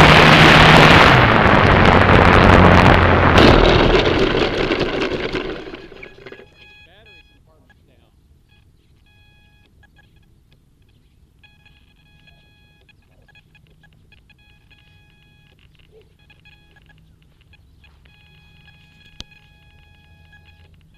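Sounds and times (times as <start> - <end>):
low hum: 0.0 - 6.7
electronic beeping: 5.3 - 7.8, 11.4 - 20.8.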